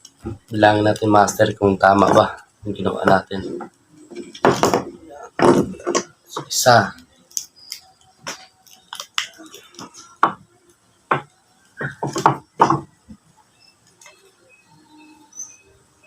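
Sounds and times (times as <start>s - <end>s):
faint high chirps: 5.0s - 16.0s.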